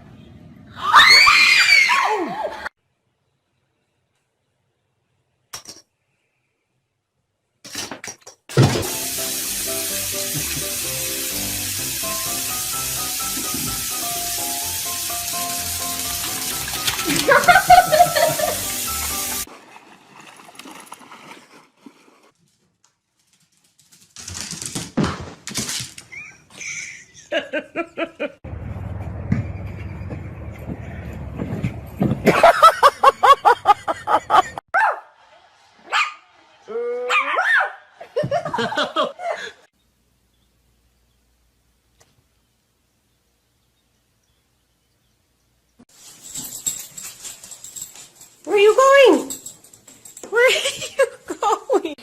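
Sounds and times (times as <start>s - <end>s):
background music: 8.8s - 19.5s
steady hiss: 8.9s - 16.0s.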